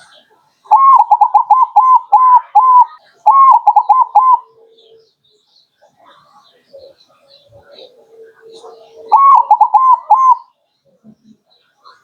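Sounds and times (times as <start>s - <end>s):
dove cooing: 0.7s - 5.0s, 6.7s - 10.5s.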